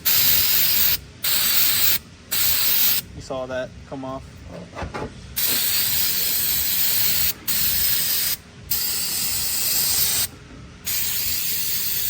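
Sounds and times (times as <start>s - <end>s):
pressurised cleaning spray hissing: 0.0s - 3.0s, 5.4s - 10.3s, 10.9s - 12.0s.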